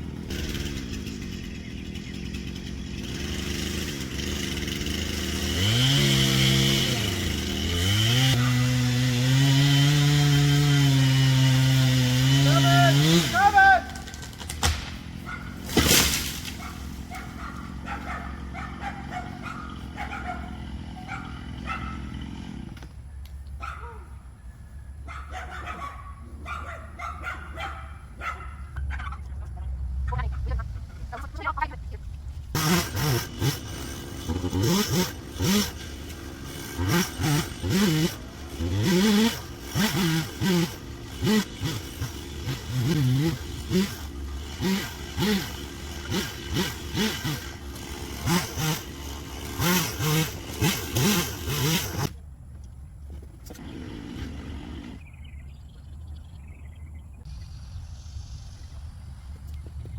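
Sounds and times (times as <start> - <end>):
chainsaw idling: 0.0 - 23.1, 32.5 - 52.2, 53.4 - 55.4
dog barking in high yaps: 16.6 - 22.1, 23.6 - 24.2, 25.0 - 29.1.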